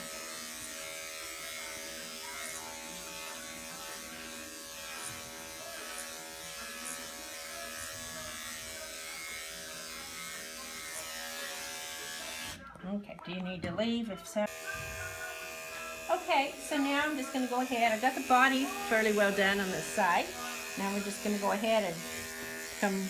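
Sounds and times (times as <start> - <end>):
electric clipper humming: 0.0 - 12.7, 14.5 - 23.0.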